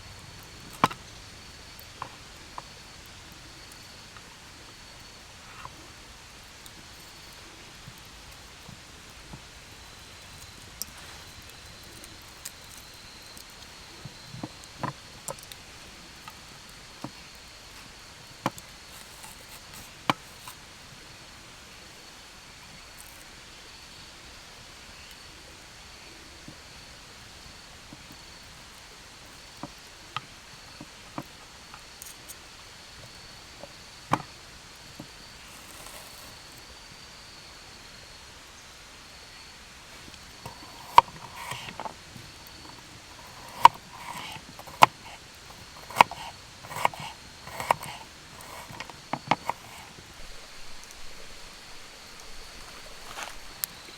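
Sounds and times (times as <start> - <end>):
insects trilling: 0.0 - 53.9
sharp pops and clicks: 40.0 - 50.1.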